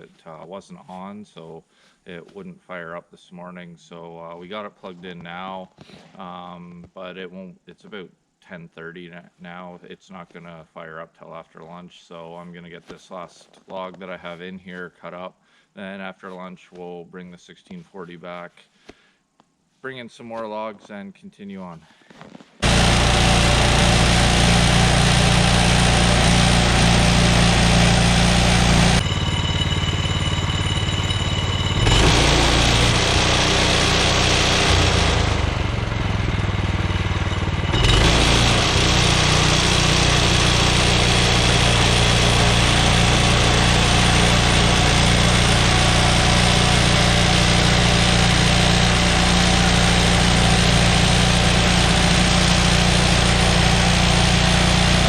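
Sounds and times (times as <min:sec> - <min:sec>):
sawmill engine running: 0:22.6 - 0:55.0.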